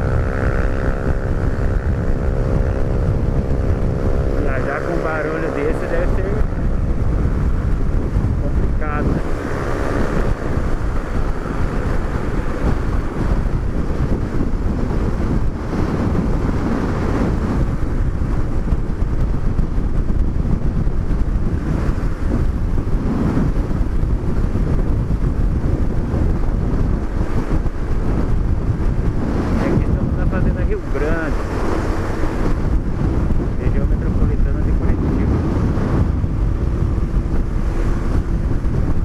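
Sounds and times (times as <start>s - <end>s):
wind buffeting the microphone: 0.0s - 39.0s.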